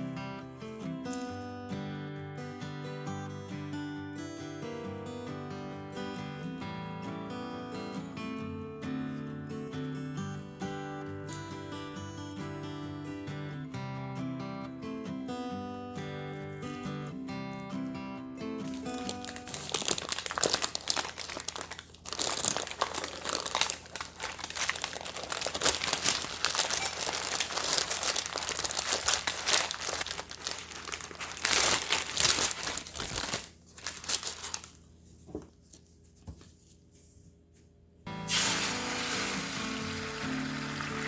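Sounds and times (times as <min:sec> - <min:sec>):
plastic crinkling and rustling: 0:18.6 - 0:36.9.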